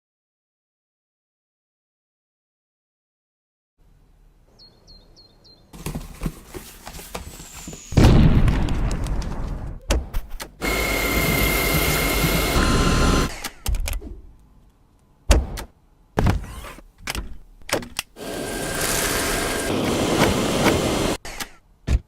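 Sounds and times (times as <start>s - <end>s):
vacuum cleaner motor whining: 10.6s - 13.3s, 18.2s - 21.2s.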